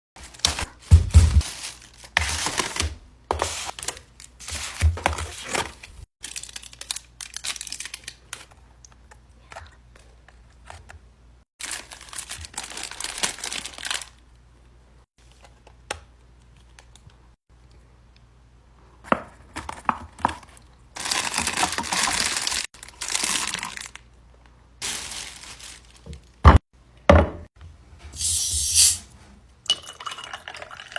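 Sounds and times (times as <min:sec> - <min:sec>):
packaging crinkling and tearing: 0:00.2 - 0:02.9, 0:05.4 - 0:08.5, 0:11.6 - 0:14.2, 0:21.0 - 0:24.0, 0:24.8 - 0:26.2.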